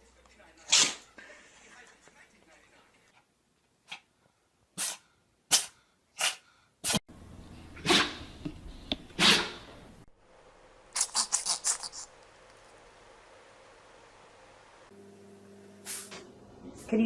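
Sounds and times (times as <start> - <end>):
dog sneezing: 0.7 - 1.1, 4.8 - 7.0, 7.8 - 8.2, 9.2 - 9.7.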